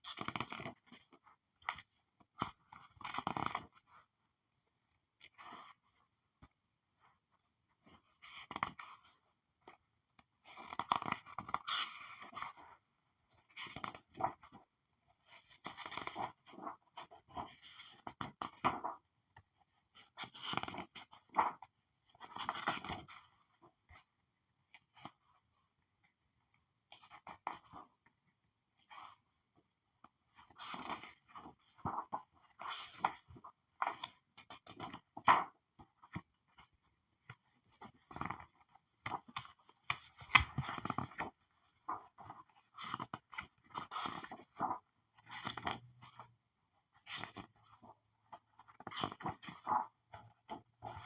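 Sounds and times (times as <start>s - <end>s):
paper pages flipping: 39.0s - 41.3s.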